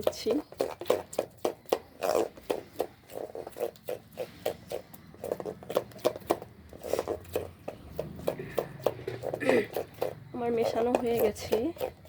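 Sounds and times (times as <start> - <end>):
batter squelching in a bowl: 0.0 - 12.0.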